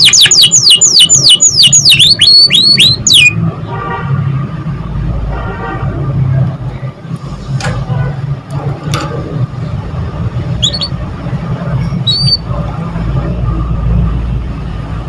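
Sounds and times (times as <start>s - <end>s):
small bird chirping: 10.6s - 11.0s, 12.0s - 12.4s.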